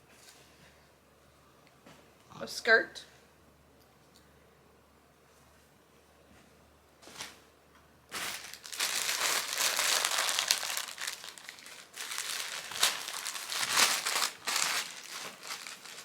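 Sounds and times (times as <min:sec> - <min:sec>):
packaging crinkling: 0:08.1 - 0:16.0.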